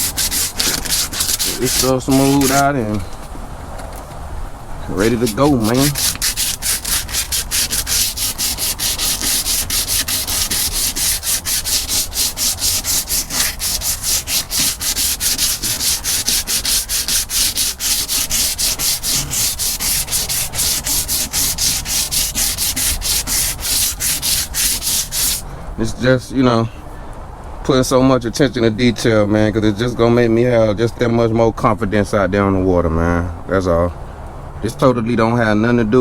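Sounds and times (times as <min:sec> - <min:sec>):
sandpaper rubbing painted surface: 0:00.0 - 0:02.8, 0:04.9 - 0:25.4.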